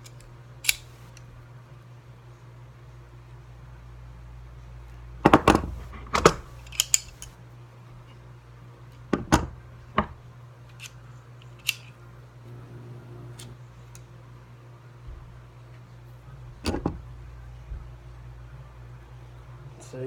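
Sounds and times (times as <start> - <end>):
metallic clicks of pliers: 0.0 - 1.3, 6.6 - 7.4, 10.7 - 12.0
low steady hum: 0.0 - 20.0.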